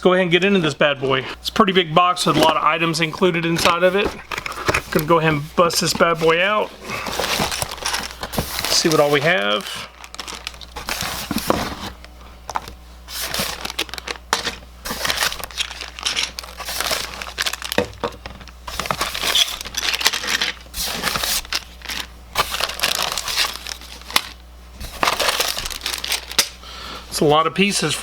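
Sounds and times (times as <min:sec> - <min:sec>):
plastic bags crinkling: 0:02.1 - 0:28.0.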